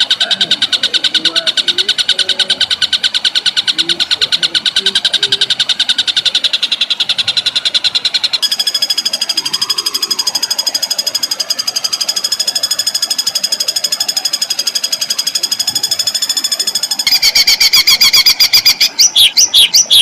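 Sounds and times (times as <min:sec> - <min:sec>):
songbird rapid trill: 0:00.0 - 0:20.0.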